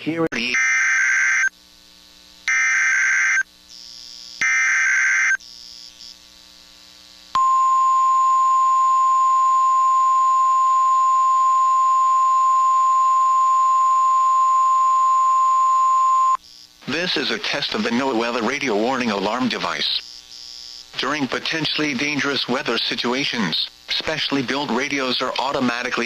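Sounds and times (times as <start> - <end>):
buzzy data bursts: 0.4 - 7.4, 16.4 - 26.0
steady warning alarm tone: 0.6 - 1.5, 2.5 - 3.4, 4.4 - 6.1.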